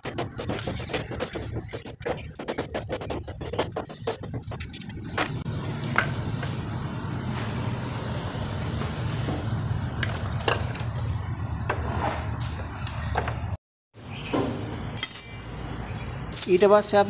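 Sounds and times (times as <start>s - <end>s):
low mechanical hum: 4.4s - 14.9s.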